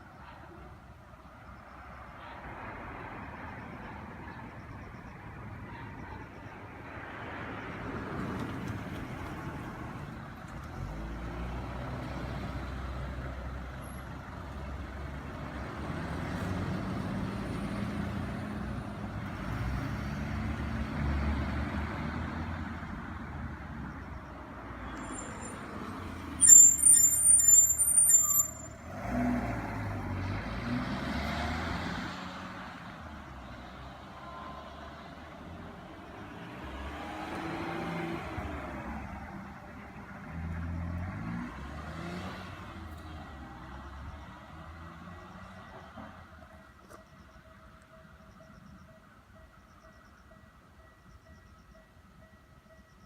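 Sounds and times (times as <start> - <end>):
high-pitched brake squeal: 24.8 - 29.4.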